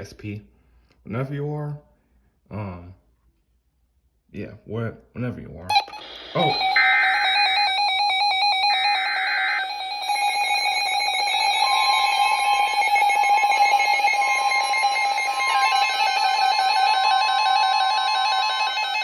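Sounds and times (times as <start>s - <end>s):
buzzy data bursts: 5.7s - 13.0s
chorus of radio alarm beeps: 5.7s - 19.0s
long steady warning tone: 5.7s - 19.0s.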